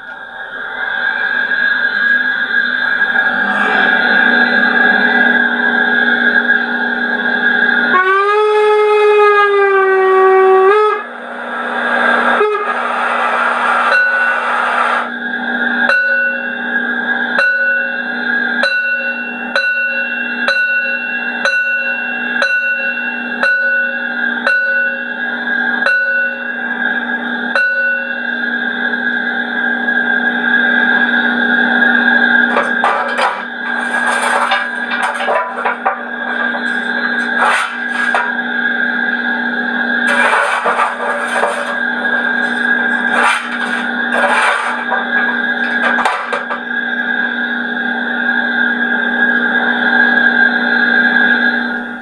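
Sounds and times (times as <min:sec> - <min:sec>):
locomotive chuffs: 0:00.0 - 0:08.4, 0:10.7 - 0:52.0
steam whistle: 0:00.0 - 0:15.2
steady drone: 0:00.0 - 0:52.0
steam hiss: 0:11.5 - 0:15.1.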